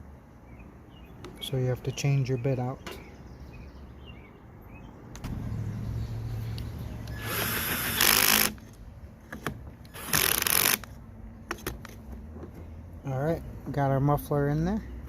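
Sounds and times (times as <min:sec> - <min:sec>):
power driver running: 0:05.2 - 0:08.6.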